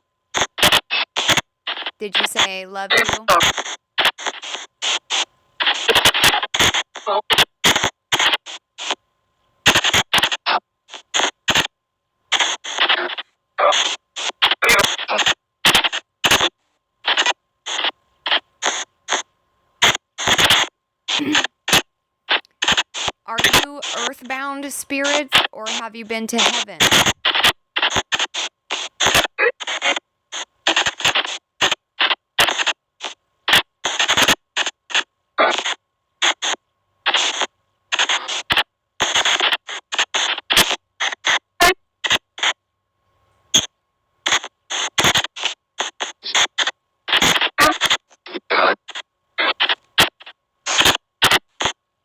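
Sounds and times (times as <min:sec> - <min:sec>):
radio-like fragments: 0:02.0 - 0:03.4, 0:23.3 - 0:27.4.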